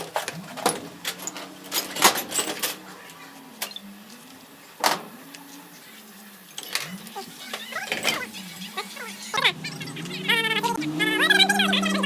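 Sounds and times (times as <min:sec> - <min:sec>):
metallic clinks and knocks: 0:00.0 - 0:02.8
low wavering hum: 0:08.3 - 0:12.0.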